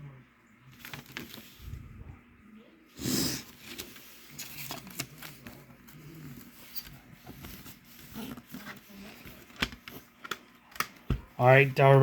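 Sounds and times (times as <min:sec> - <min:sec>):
plastic cd case clicks: 0:09.5 - 0:11.2.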